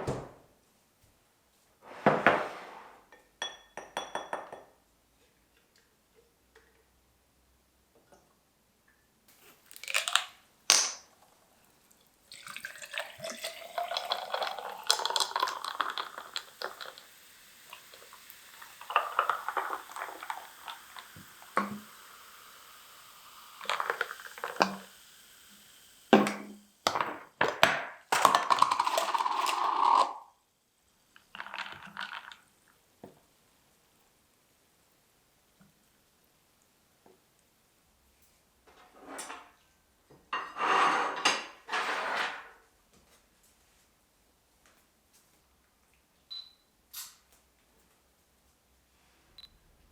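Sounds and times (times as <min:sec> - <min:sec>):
kitchenware clinking: 0:03.1 - 0:04.8, 0:40.4 - 0:42.6
liquid pouring into container: 0:09.6 - 0:10.4, 0:11.2 - 0:25.2, 0:28.2 - 0:30.2.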